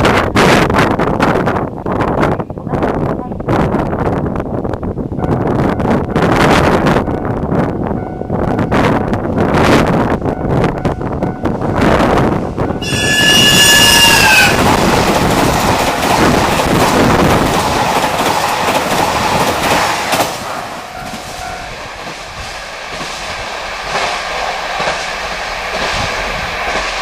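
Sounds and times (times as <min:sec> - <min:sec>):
train wheels clattering on rails: 0:08.7 - 0:27.0
train horn: 0:12.7 - 0:14.7, 0:20.6 - 0:21.9.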